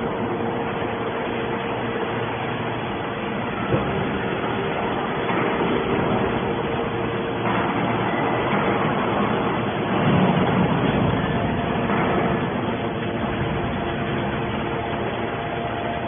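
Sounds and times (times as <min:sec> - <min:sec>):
faint constant whine: 0:00.0 - 0:16.0
hydraulic power unit hum: 0:00.0 - 0:16.0.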